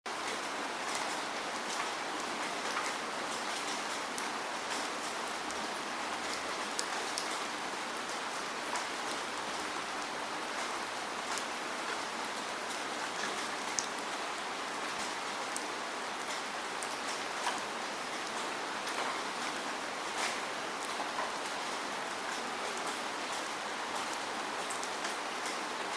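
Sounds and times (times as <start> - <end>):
close raindrops striking: 0.1 - 25.9
steady rain hiss: 0.1 - 25.9.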